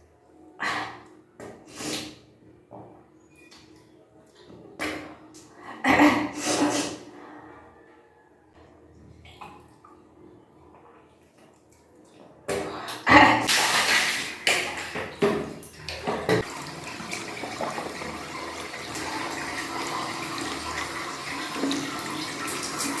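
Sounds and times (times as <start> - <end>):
running water rushing: 13.5 - 23.0
water splashing: 13.5 - 23.0.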